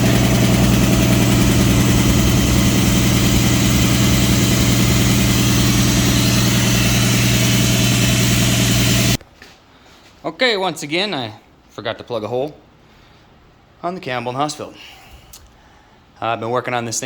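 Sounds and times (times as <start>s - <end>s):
air compressor running: 0.0s - 9.2s.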